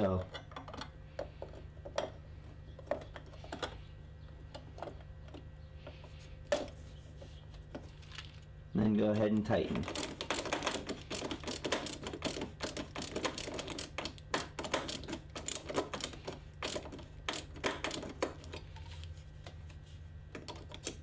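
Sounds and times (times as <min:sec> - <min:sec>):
low steady hum: 0:00.0 - 0:21.0.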